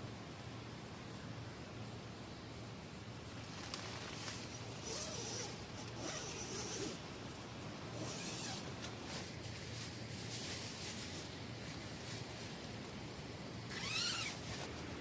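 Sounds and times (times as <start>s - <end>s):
zipper pulled: 4.8s - 7.0s, 8.0s - 8.7s, 13.7s - 14.7s.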